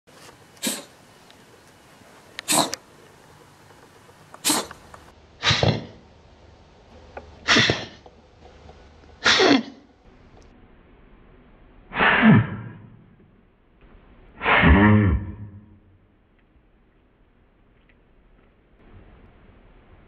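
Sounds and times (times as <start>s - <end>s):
cat coughing: 0.6s - 0.9s, 2.5s - 2.8s, 4.4s - 4.8s, 7.4s - 8.0s, 9.2s - 9.8s.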